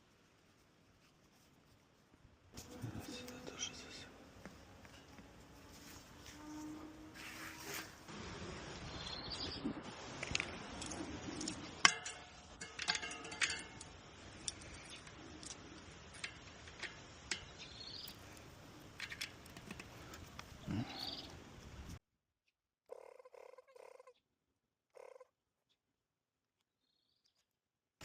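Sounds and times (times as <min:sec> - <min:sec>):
clicks and rustles: 0:10.1 - 0:20.7.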